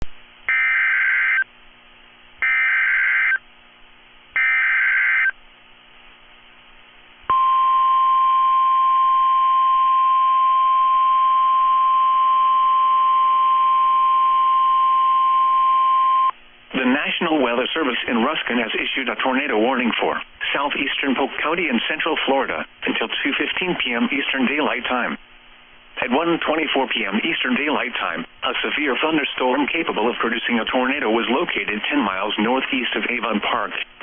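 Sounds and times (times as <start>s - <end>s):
steady warning tone: 2.4s - 3.4s, 4.4s - 5.4s.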